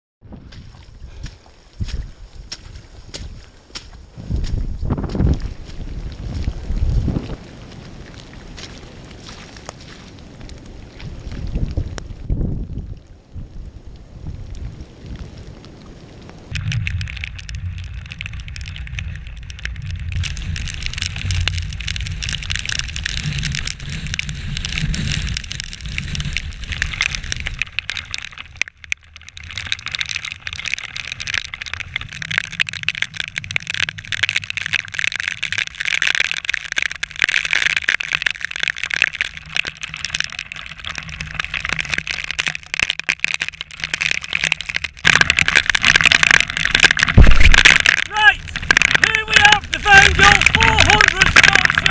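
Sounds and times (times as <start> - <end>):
wind rumble on microphone: 0.2 - 28.1, 44.9 - 51.9
torrential rain: 0.3 - 51.9.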